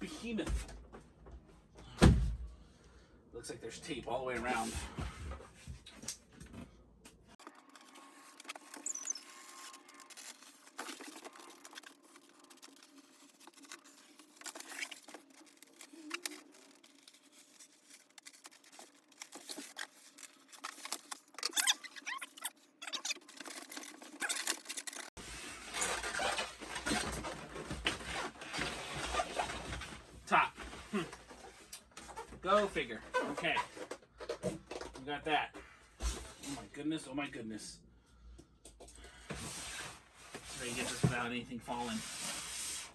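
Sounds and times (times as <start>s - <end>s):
cardboard packaging rustling: 7.4s - 31.7s.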